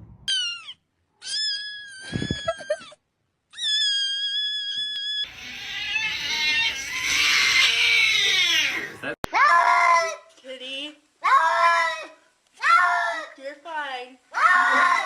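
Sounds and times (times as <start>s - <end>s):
harsh scream-like cry: 3.5s - 10.2s, 11.2s - 13.4s, 14.4s - 15.0s
cat meowing: 3.6s - 10.1s.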